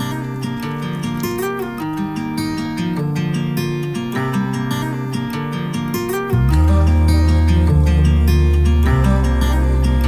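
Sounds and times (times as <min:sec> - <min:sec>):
song with acoustic guitar and bass: 0:00.0 - 0:10.0.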